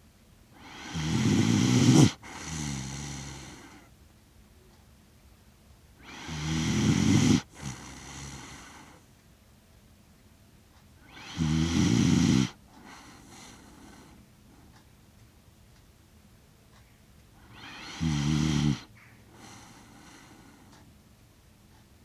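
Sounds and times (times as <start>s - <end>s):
dog snoring: 0.6s - 3.9s, 6.0s - 9.0s, 11.0s - 14.2s, 17.4s - 20.8s.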